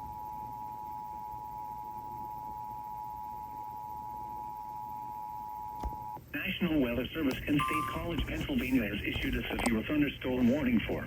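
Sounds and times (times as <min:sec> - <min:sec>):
two-tone alert signal: 0:07.6 - 0:08.7.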